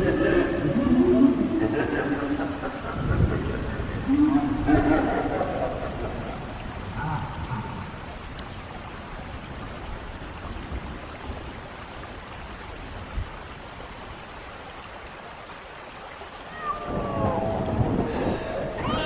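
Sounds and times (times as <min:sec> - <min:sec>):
rain falling: 0:00.0 - 0:19.0.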